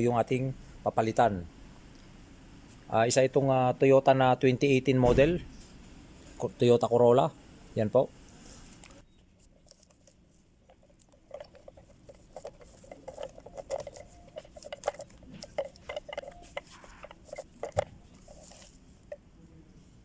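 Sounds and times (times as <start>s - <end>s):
small parts clicking and tapping: 8.8s - 19.3s.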